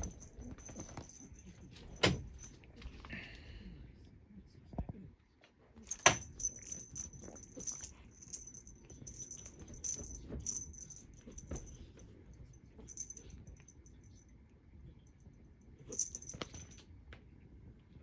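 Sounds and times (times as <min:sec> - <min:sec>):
small bell jingling: 0:00.0 - 0:03.2, 0:05.8 - 0:14.3, 0:15.9 - 0:16.8.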